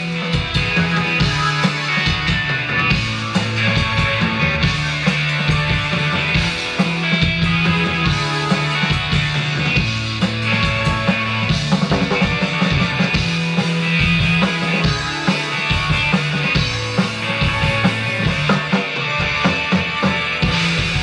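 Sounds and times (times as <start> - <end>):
drum kit beat: 0.0 - 21.0
live rock band playing: 0.0 - 21.0.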